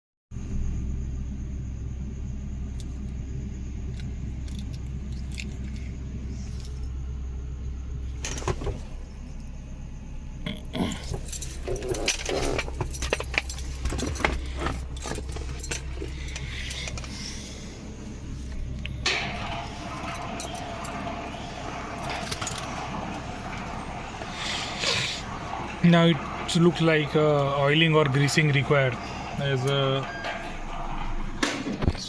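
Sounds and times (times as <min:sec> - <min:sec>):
car engine drone: 0:00.4 - 0:32.0
metallic clinking and rattling: 0:03.8 - 0:07.4, 0:10.7 - 0:31.4.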